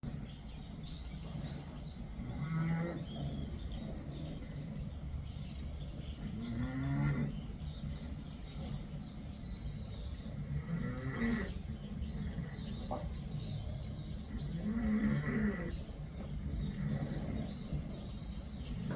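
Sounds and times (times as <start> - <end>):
cat snoring: 6.4 - 7.3, 10.4 - 11.7, 14.6 - 15.8, 16.7 - 17.6.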